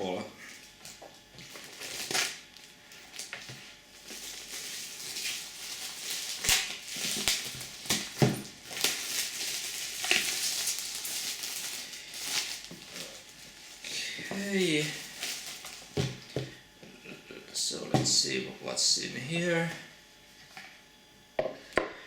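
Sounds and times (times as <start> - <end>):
sharp crackles of packaging: 0.5 - 16.3
packaging rustling and crinkling: 0.5 - 16.6.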